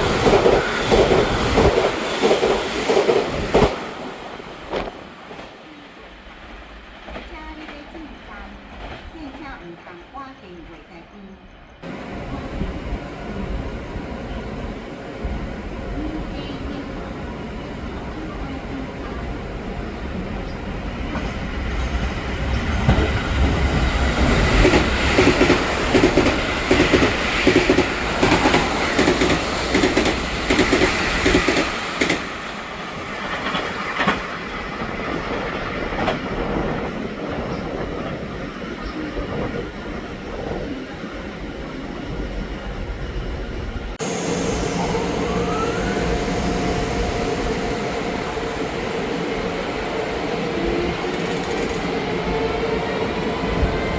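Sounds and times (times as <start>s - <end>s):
electric train hum and whine: 0.0s - 53.9s
train wheels clicking over rail joints: 20.5s - 36.9s, 44.3s - 53.9s.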